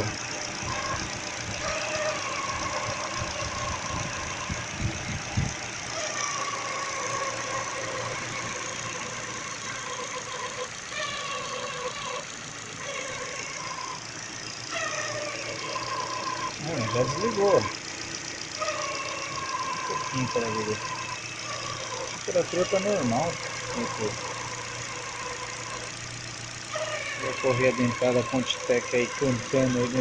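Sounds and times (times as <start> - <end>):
car engine idling: 0.0 - 30.0
radiator cooling fan running: 0.0 - 30.0
timing belt high whine: 0.0 - 30.0.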